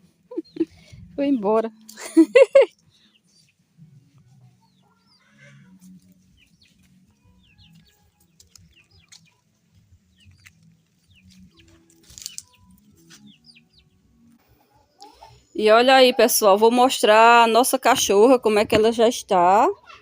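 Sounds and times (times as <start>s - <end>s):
rustling: 10.3s - 13.3s.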